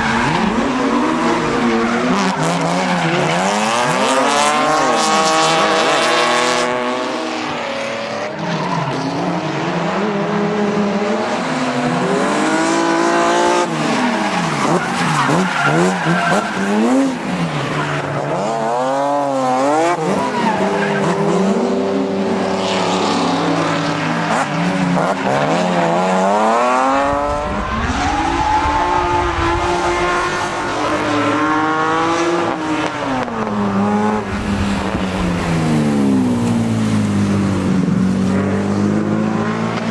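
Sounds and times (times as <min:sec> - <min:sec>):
car engines revving hard: 0:00.0 - 0:39.9
tyres squealing: 0:13.7 - 0:18.4.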